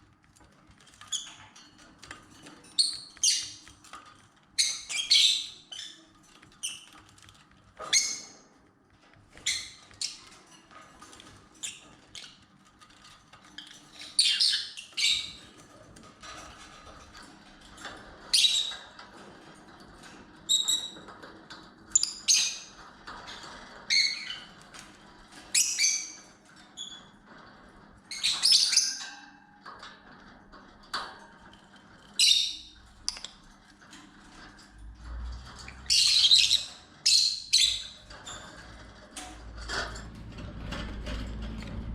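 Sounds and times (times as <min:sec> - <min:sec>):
lovebirds chirping and squawking: 0:02.7 - 0:03.7, 0:04.6 - 0:06.9, 0:07.8 - 0:08.5, 0:11.6 - 0:15.6, 0:18.3 - 0:19.0, 0:21.9 - 0:26.2, 0:28.1 - 0:29.2, 0:32.1 - 0:33.4, 0:35.5 - 0:38.7.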